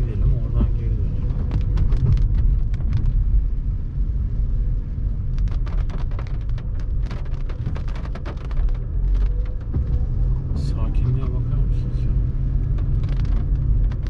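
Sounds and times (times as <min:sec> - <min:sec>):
wind buffeting microphone: 0:00.0 - 0:11.0
road noise: 0:00.0 - 0:14.0
raindrop taps: 0:00.4 - 0:03.5, 0:05.2 - 0:11.2, 0:12.2 - 0:14.0.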